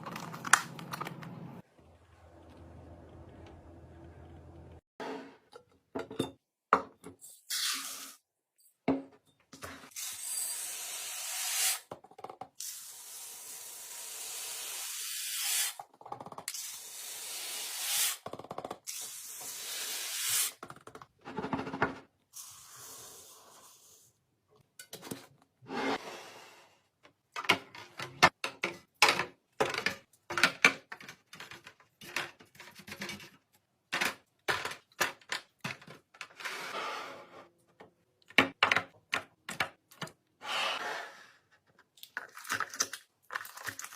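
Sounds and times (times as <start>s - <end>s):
clicks and knocks of containers: 27.3s - 36.4s, 41.7s - 43.9s.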